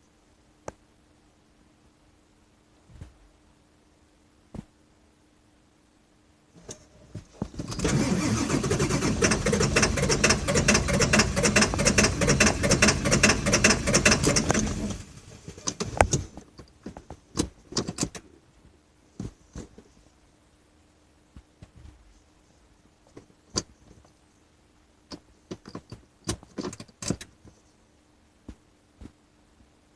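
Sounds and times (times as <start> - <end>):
diesel engine cranking: 7.6 - 16.3.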